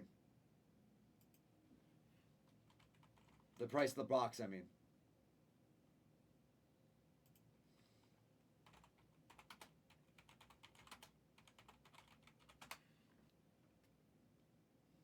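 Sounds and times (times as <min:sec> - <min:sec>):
typing on a keyboard: 0:02.4 - 0:03.6, 0:08.6 - 0:12.8.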